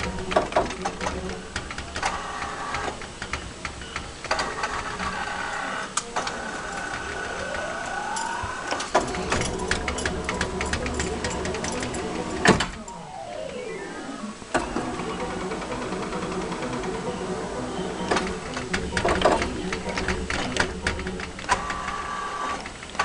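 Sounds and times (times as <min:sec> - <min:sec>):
electronic game tones: 0:07.3 - 0:21.2
rising tone: 0:12.9 - 0:19.0
claw motors whirring with clicks: 0:18.1 - 0:23.0.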